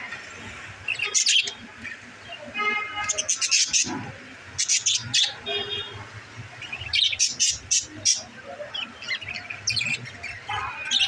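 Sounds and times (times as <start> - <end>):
budgerigars chirping: 0.8 - 2.4, 3.0 - 4.0, 4.6 - 5.4, 6.6 - 11.0.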